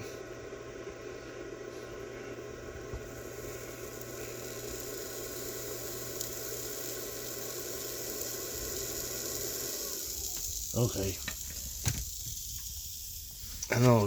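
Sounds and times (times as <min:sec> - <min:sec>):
induction heater humming: 0:00.0 - 0:14.0
material sizzling on hot bolt: 0:02.9 - 0:14.0.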